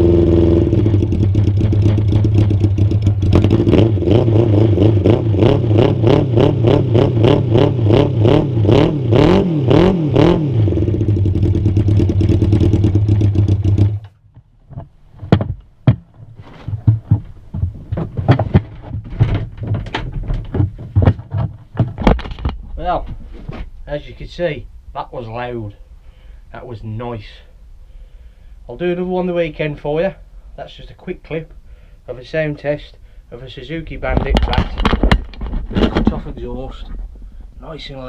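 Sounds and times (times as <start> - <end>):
motorcycle engine revving: 0.0 - 14.2
clicks and knocks: 14.0 - 22.8, 34.1 - 36.4.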